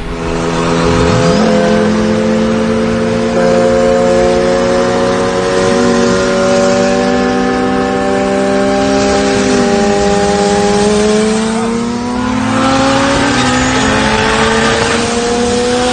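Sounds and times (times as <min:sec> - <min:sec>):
engine note rising sharply: 0:00.0 - 0:03.8
car engines running hard: 0:00.0 - 0:15.9.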